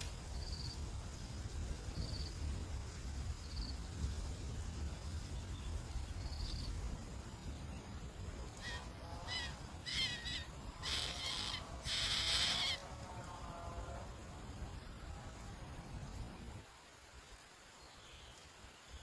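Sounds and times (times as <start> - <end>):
harsh raspy bird calls: 8.6 - 12.8.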